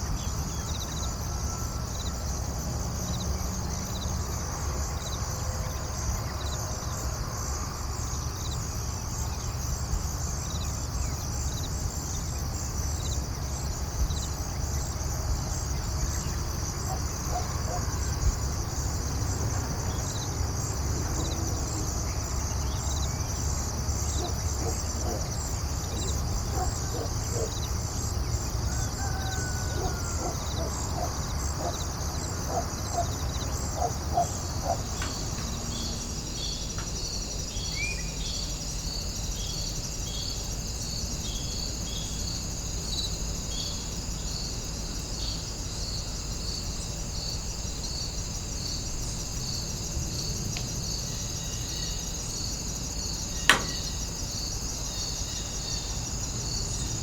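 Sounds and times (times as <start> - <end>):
crickets and insects chirping: 0.0 - 57.0
sharp click: 53.4 - 54.0.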